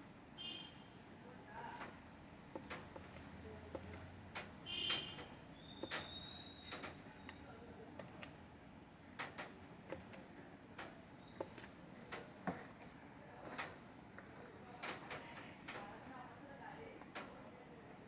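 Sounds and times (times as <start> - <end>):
button presses and handling clicks: 2.6 - 5.0, 5.8 - 6.9
alarm panel high-pitched beeps: 2.6 - 6.7, 8.0 - 8.4, 10.0 - 10.3, 11.4 - 11.8.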